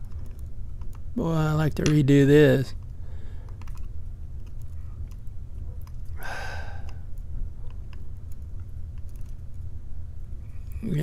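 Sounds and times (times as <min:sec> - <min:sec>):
steady low hum: 0:00.0 - 0:11.0
long sigh: 0:06.2 - 0:07.0.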